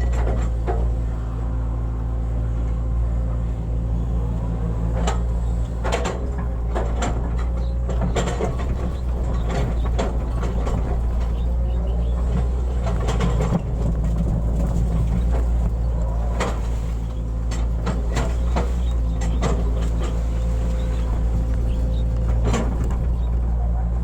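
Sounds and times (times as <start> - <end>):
excavator diesel engine running: 0.0 - 24.0
bucket clanks and scrapes: 5.1 - 23.4.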